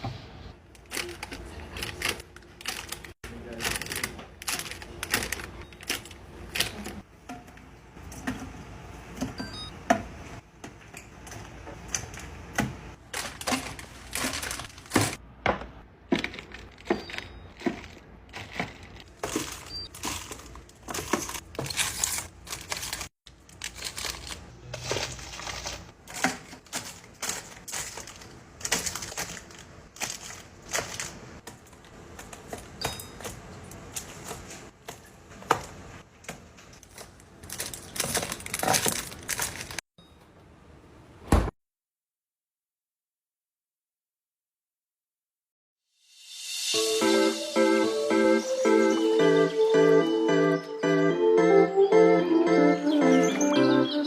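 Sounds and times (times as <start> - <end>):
plastic crinkling: 0.8 - 6.8, 13.1 - 15.2, 16.2 - 31.4, 36.8 - 39.8.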